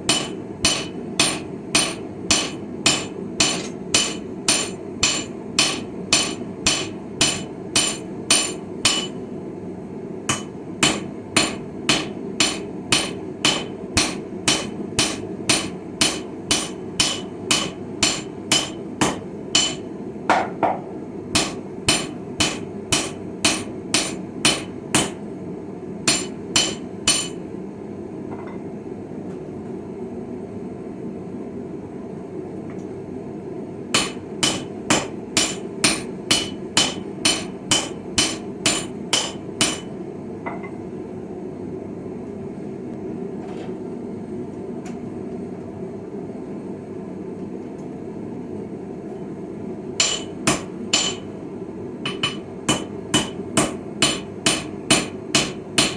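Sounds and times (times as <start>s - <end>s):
hammer ringing on steel anvil: 0.1s - 9.2s, 10.3s - 20.5s, 21.4s - 25.2s, 26.1s - 27.4s, 34.0s - 39.9s, 50.0s - 51.3s, 52.1s - 55.9s.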